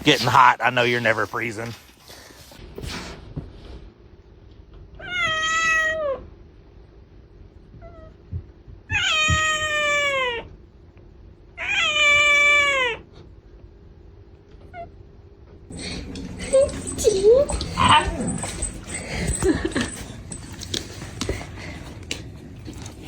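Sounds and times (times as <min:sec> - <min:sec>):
cat meowing: 0:05.0 - 0:06.2, 0:08.9 - 0:10.5, 0:11.6 - 0:13.0.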